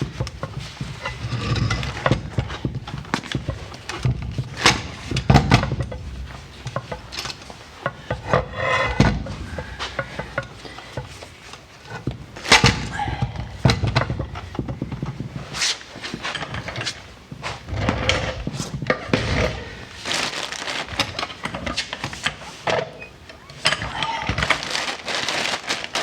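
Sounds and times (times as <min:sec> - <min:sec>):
metal knocks clunks and scraping: 0:00.0 - 0:20.0.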